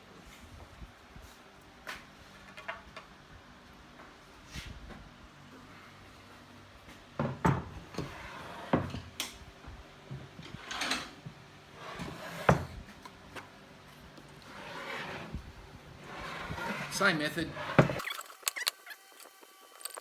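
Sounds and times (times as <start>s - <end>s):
wood scraping: 14.4s - 15.4s, 16.0s - 20.0s.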